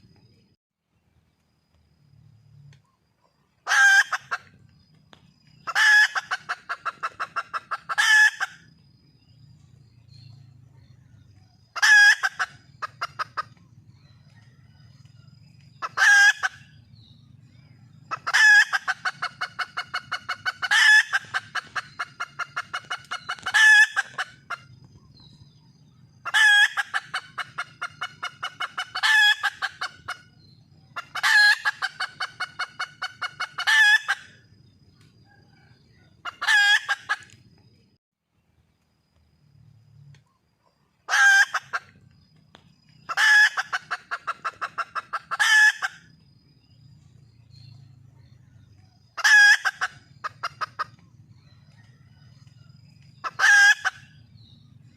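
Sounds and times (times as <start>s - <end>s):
hen calling and clucking: 2.8s - 4.8s, 5.4s - 8.9s, 10.6s - 37.5s, 41.0s - 42.2s, 42.9s - 46.2s, 48.1s - 54.3s.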